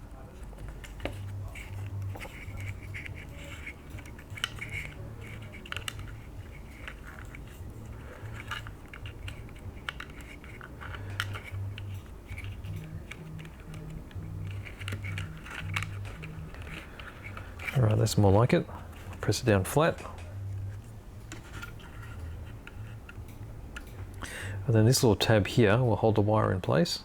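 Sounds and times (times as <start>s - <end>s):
fingers clicking plastic part: 0.6s - 18.0s.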